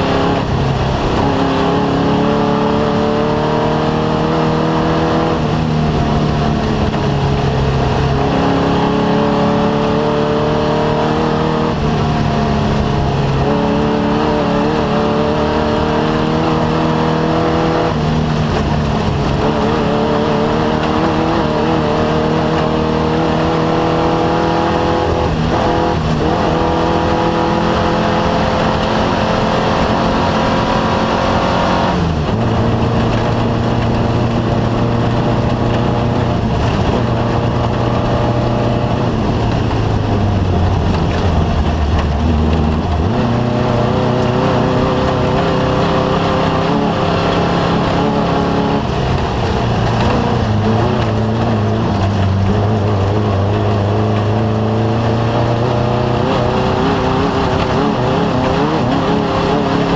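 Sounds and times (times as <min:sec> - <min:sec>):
race vehicle engine revving: 0:00.0 - 0:59.9.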